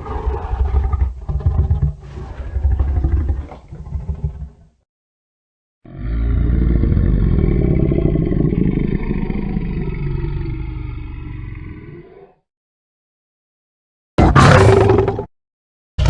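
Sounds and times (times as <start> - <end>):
deep monster roar: 5.8 - 12.4, 14.2 - 15.3.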